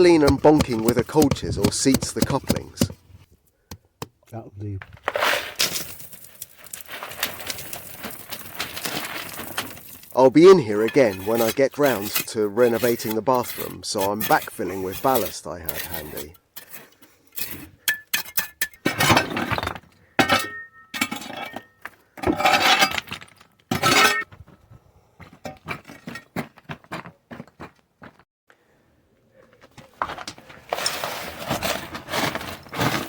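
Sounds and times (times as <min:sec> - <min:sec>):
gravel clattering into a trench: 0:04.8 - 0:24.3, 0:29.5 - 0:33.0.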